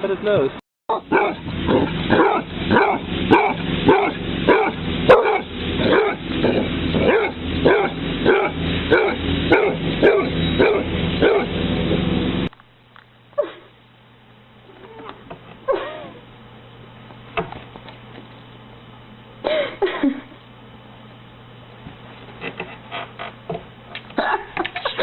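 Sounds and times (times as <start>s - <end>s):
dog barking: 0.9s - 11.5s.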